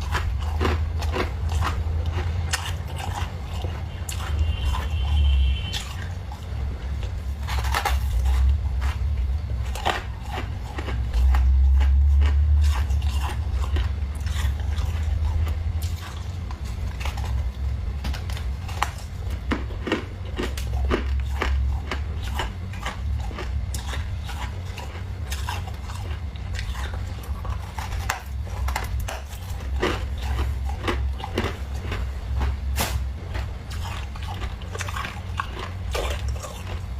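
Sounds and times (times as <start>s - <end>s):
freezer frost scraped and crunching: 0.0s - 36.9s
steady low hum: 0.0s - 36.9s.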